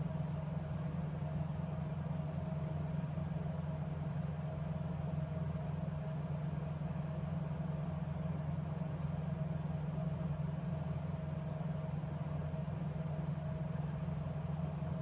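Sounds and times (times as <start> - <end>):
motor hum with thin whine: 0.0 - 15.0.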